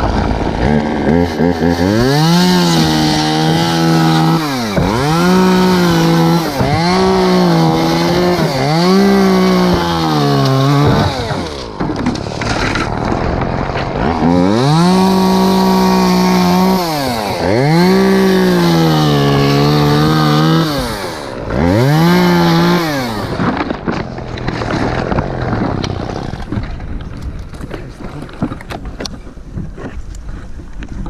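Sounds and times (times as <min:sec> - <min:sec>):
chainsaw revving: 0:00.0 - 0:28.6
crackles and rustling: 0:11.1 - 0:14.2, 0:23.4 - 0:31.0.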